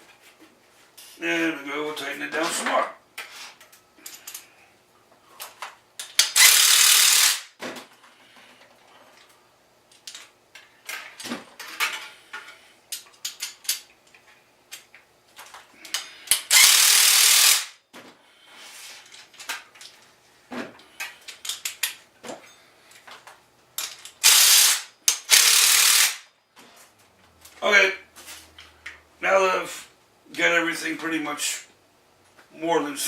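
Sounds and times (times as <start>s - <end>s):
ratchet wrench clicks: 6.0s - 7.5s, 16.3s - 17.7s, 24.2s - 26.2s
fast ratcheting bursts: 6.2s - 7.5s, 16.4s - 17.8s, 24.2s - 26.2s.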